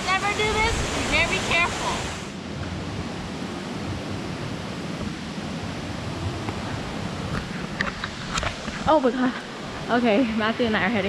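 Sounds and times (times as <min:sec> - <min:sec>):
waterfall roaring: 0:00.0 - 0:02.4.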